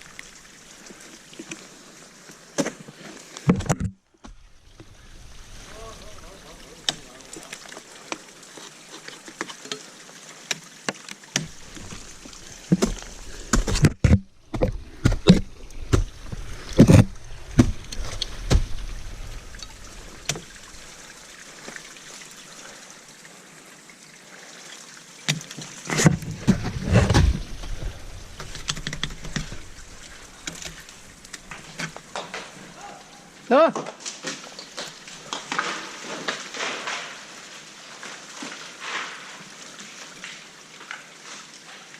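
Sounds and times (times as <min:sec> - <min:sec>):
rumbling handling noise: 0:25.9 - 0:32.6.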